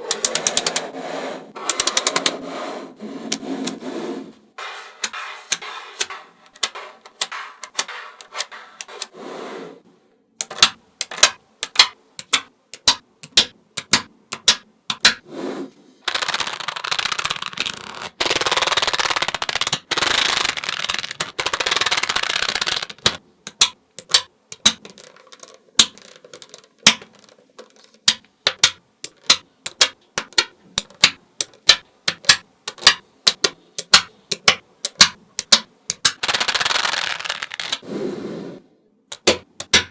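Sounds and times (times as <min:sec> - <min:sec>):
magnetic balls clicking together: 0:00.1 - 0:00.9, 0:04.9 - 0:09.1, 0:10.4 - 0:15.2, 0:16.1 - 0:37.8, 0:39.1 - 0:39.9
magnetic balls rattling: 0:16.0 - 0:37.8.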